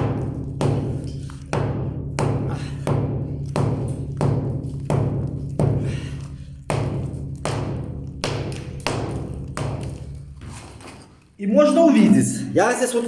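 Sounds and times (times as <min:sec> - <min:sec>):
hand tool striking concrete: 0:00.0 - 0:10.3.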